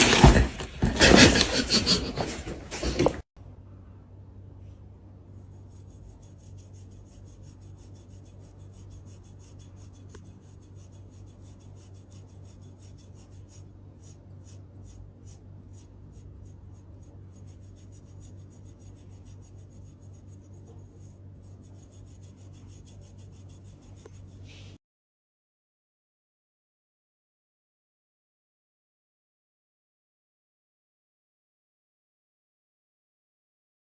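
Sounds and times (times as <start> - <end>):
low hum: 3.4 - 24.8
rasping rubbing strokes: 5.3 - 24.8.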